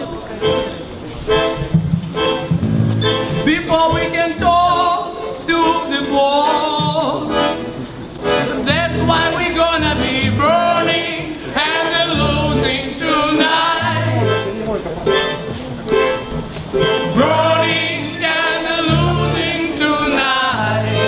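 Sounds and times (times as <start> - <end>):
music with low bass: 2.6 - 3.4
person singing with vibrato: 2.7 - 14.5, 17.1 - 21.0.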